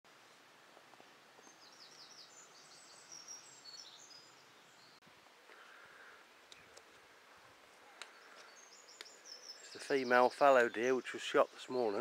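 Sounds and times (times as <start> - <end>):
faint background hiss: 0.1 - 12.0
small bird chirping: 1.4 - 5.0, 7.9 - 12.0.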